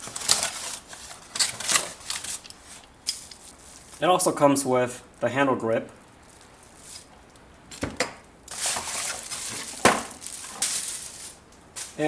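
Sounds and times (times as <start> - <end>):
packaging rustling: 0.0 - 4.2, 6.1 - 7.9, 8.5 - 12.0
knocks on packaging: 9.8 - 10.2.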